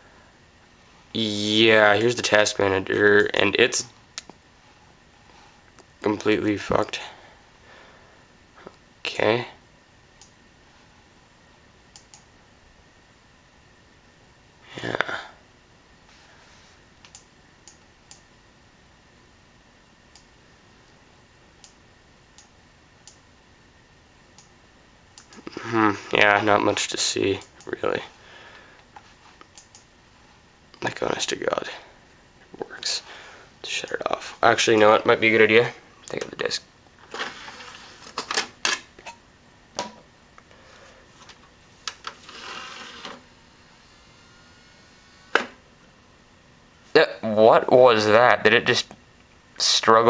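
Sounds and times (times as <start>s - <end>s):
faint steady hiss: 0.0s - 50.0s
drive tray moving: 42.0s - 43.2s.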